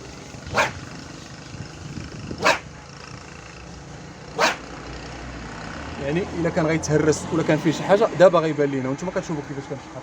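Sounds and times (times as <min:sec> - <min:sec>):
fishing rod whooshing: 0:00.5 - 0:00.8, 0:04.4 - 0:04.6.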